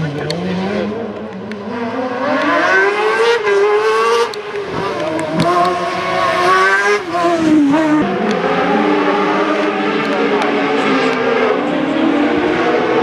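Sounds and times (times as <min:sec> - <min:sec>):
race car engine at full throttle: 0:00.0 - 0:13.0.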